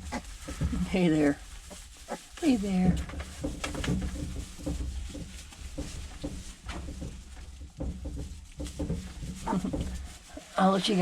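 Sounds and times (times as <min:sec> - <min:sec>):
rustles and knocks: 0:00.0 - 0:11.0
pigs grunting softly: 0:09.4 - 0:10.6.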